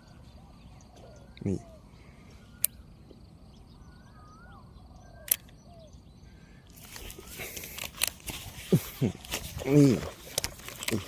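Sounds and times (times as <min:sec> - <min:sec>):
bird calls: 0:00.0 - 0:11.0
sharp clicks: 0:02.6 - 0:02.8, 0:05.2 - 0:05.6, 0:06.8 - 0:08.4.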